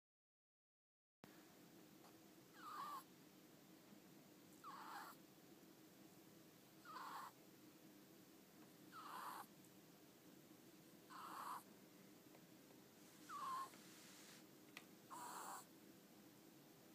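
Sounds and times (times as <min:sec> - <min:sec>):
ferret snoring faintly: 0:02.5 - 0:03.1, 0:04.6 - 0:05.2, 0:06.8 - 0:07.4, 0:08.9 - 0:09.6, 0:11.0 - 0:11.7, 0:13.2 - 0:14.4, 0:15.1 - 0:15.7.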